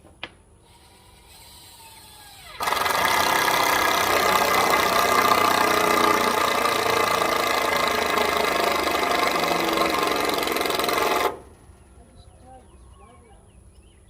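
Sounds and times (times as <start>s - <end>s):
engine running: 2.6s - 12.2s.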